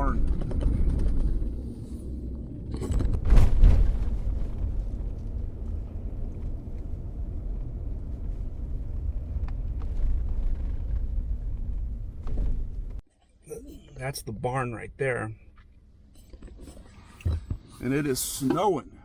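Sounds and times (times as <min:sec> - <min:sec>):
car engine and tyre rumble: 0:00.0 - 0:13.0
loud thump: 0:02.9 - 0:04.7.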